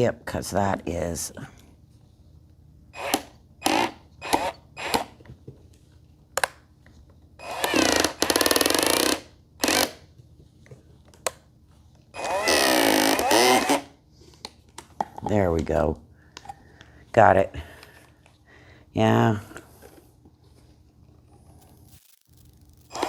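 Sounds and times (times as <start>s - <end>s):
power drill driving a screw: 3.0s - 5.1s, 7.4s - 10.0s, 12.2s - 13.9s, 21.8s - 23.0s.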